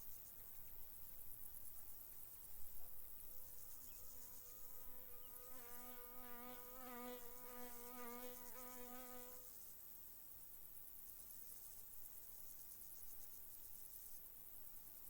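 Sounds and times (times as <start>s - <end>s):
crickets chirping: 0.0s - 15.0s
flying insect buzzing: 3.5s - 9.6s.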